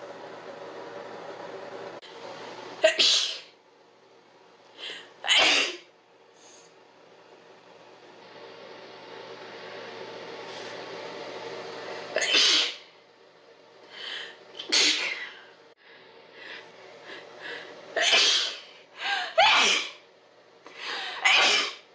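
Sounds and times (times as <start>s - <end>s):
person sneezing loudly: 2.8s - 3.5s, 5.3s - 5.9s, 12.2s - 12.8s, 14.6s - 15.3s, 18.0s - 18.7s, 19.3s - 20.0s, 21.0s - 21.9s.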